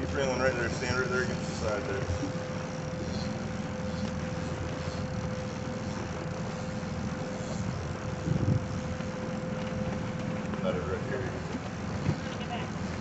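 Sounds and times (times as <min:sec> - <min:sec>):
boat motor running: 0:00.0 - 0:13.0
wind buffeting microphone: 0:07.1 - 0:13.0.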